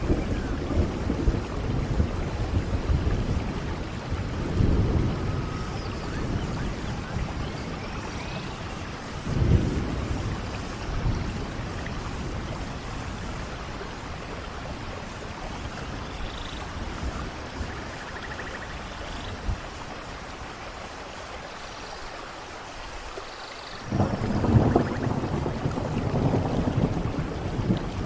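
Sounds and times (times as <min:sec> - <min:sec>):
low thunder rolling: 0:00.0 - 0:15.0, 0:23.8 - 0:28.0
heavy rain: 0:00.0 - 0:28.0.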